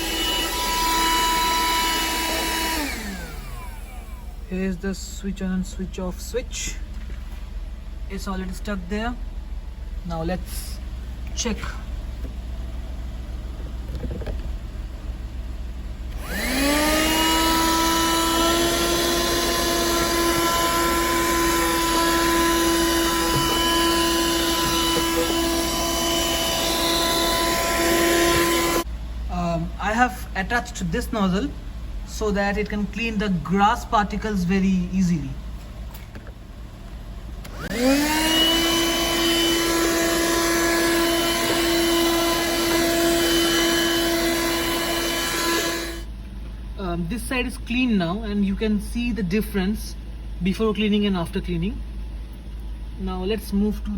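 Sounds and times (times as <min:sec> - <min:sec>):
handheld vacuum motor whining: 0:00.0 - 0:04.5, 0:16.1 - 0:28.9, 0:37.4 - 0:46.1.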